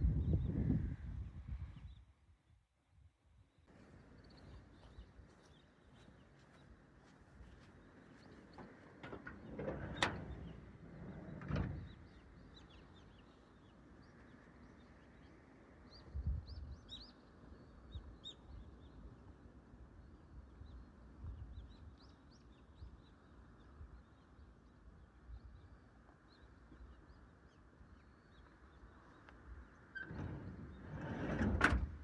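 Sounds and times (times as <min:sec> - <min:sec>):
small birds chirping: 0:03.8 - 0:09.0, 0:10.4 - 0:19.2.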